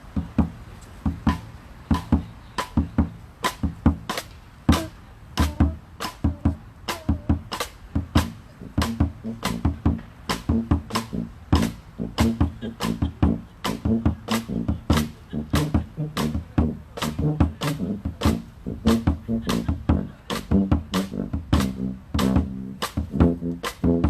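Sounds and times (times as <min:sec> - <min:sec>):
hand percussion groove: 0:00.0 - 0:24.0.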